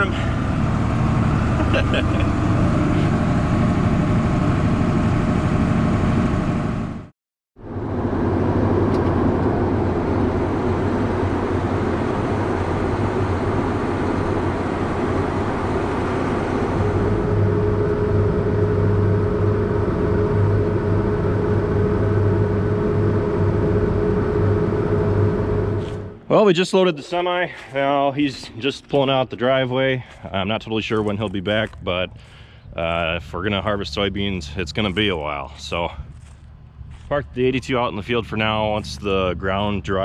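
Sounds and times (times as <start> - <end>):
diesel engine running: 0.0 - 26.6, 27.5 - 40.0
steady higher tone: 7.6 - 27.4, 37.1 - 40.0.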